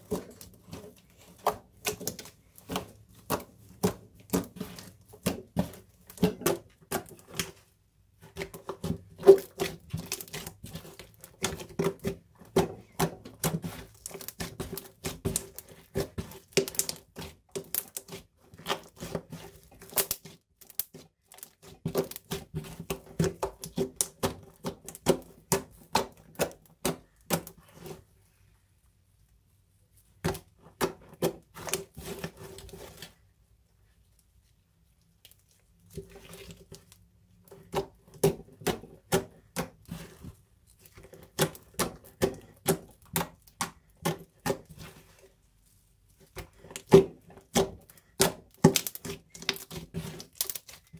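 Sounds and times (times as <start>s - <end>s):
slime squished by hand: 46.1s - 50.9s.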